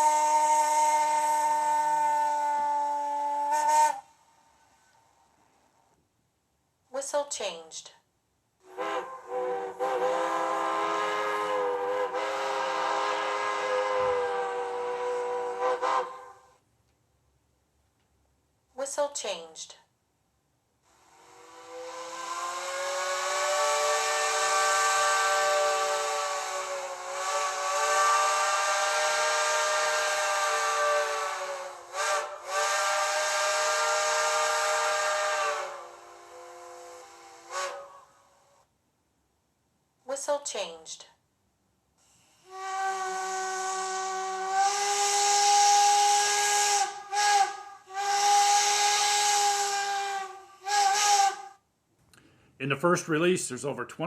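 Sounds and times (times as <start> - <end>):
steam locomotive whistle from speaker: 0.0 - 4.2, 8.6 - 16.6, 20.9 - 38.7, 42.3 - 51.6.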